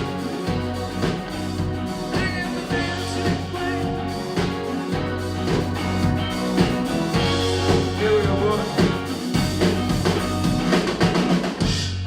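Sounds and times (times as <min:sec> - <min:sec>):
rock band playing: 0:00.0 - 0:12.0.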